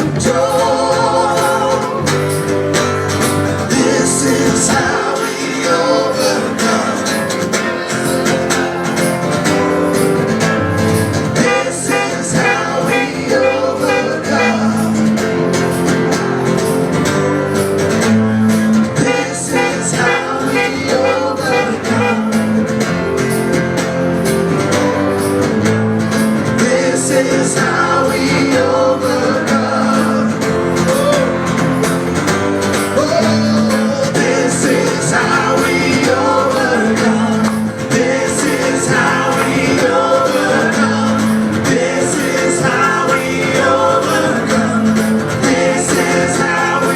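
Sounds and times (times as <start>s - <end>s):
person singing: 0.0s - 2.6s, 3.6s - 15.2s, 19.0s - 22.6s, 26.6s - 31.6s, 32.9s - 46.9s
worship band music: 0.0s - 46.9s.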